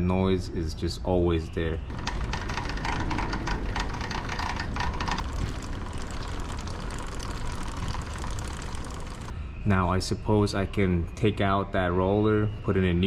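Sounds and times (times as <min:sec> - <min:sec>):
drive chain chattering: 0:01.9 - 0:09.3.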